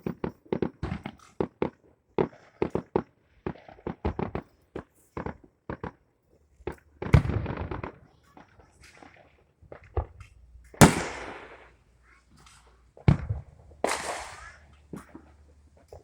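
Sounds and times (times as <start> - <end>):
fireworks popping: 0.0 - 16.0
fireworks crackling: 10.7 - 16.0
firework bang: 10.8 - 11.8, 13.1 - 14.6.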